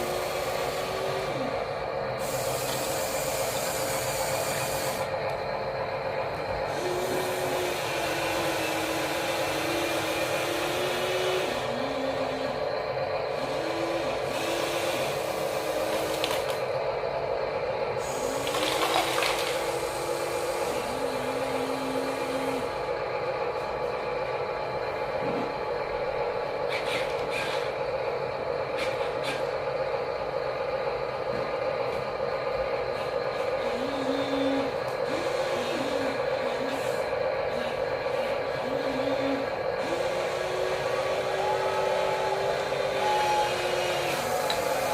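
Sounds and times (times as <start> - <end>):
small electric motors whining: 0.0 - 5.2, 6.5 - 12.7, 13.3 - 16.7, 18.0 - 22.9, 33.0 - 44.9.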